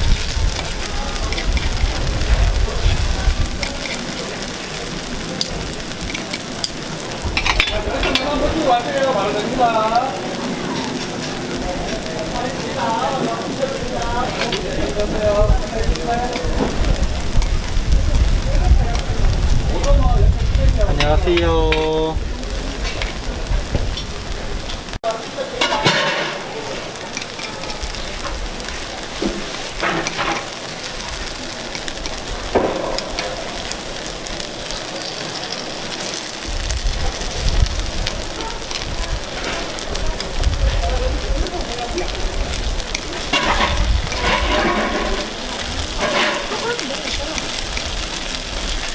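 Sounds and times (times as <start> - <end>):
batter sizzling on a griddle: 0.0 - 48.9
people talking: 0.0 - 48.9
voices: 0.0 - 48.9.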